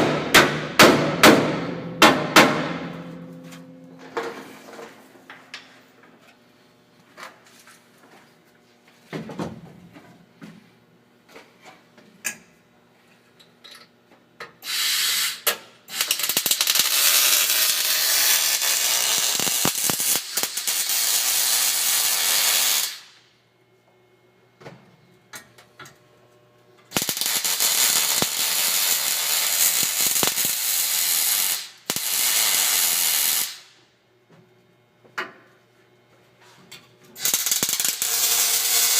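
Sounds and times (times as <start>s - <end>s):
welding arc crackling: 14.8s - 23.2s, 26.9s - 33.8s, 37.2s - 38.9s.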